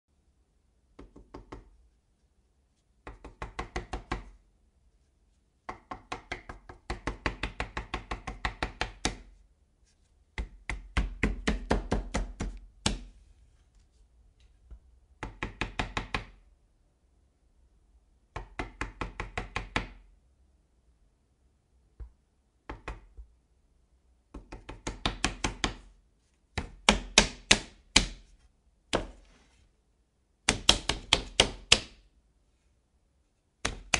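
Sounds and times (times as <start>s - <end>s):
knocking on a door: 15.2s - 16.4s.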